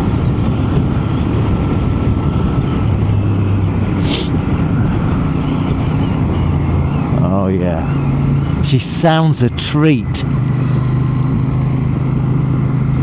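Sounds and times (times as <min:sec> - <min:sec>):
motorcycle engine running: 0:00.0 - 0:13.0
wind rushing over microphone: 0:00.0 - 0:13.0
brief hiss: 0:04.0 - 0:04.4.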